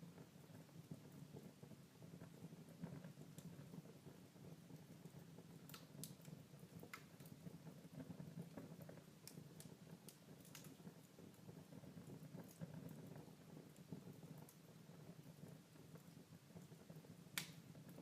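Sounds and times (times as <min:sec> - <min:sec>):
wood fire crackling and popping: 0:00.0 - 0:18.0.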